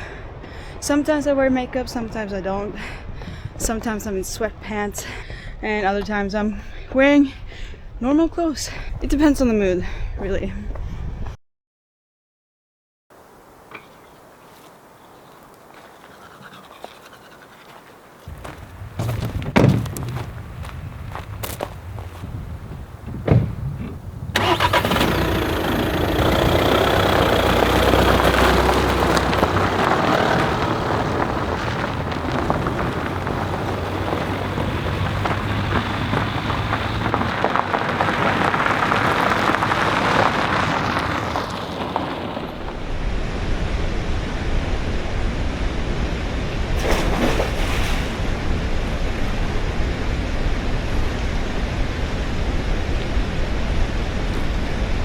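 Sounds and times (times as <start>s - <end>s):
car engine starting and running: 24.3s - 42.9s.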